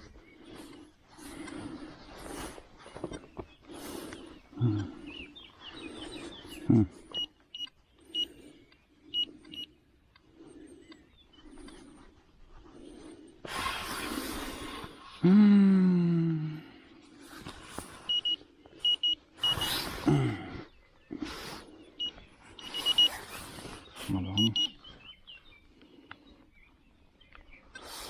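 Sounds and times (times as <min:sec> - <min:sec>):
metal detector tones: 0:07.1 - 0:09.8, 0:17.9 - 0:20.2, 0:22.0 - 0:24.8
short high beeps: 0:18.1 - 0:19.9, 0:22.0 - 0:23.2, 0:24.4 - 0:24.8.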